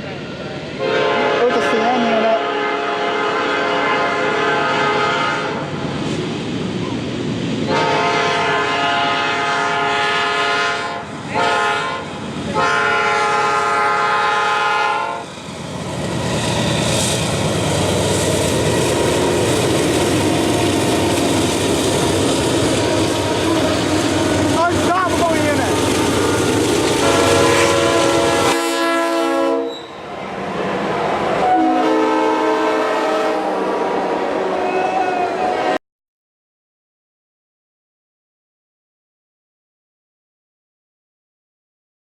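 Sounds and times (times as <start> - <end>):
train rumble: 0.0 - 34.7
train horn blasts: 0.8 - 5.7, 7.7 - 15.3, 23.0 - 24.5, 27.0 - 30.0, 31.4 - 35.8.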